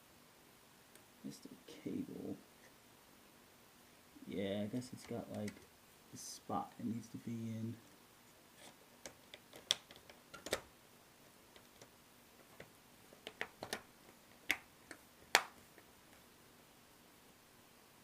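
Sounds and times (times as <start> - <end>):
plastic laptop parts clicking: 9.0 - 10.6, 12.6 - 15.9.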